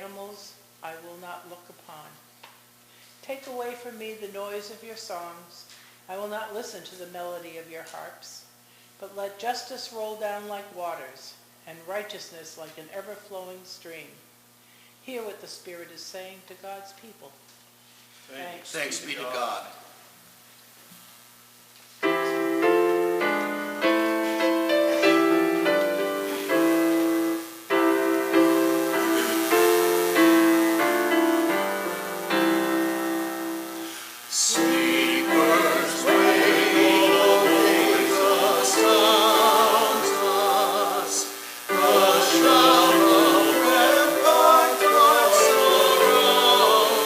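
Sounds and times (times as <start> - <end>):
piano chords and melody: 22.0 - 33.9, 34.5 - 47.0
voices singing a hymn: 22.3 - 47.0.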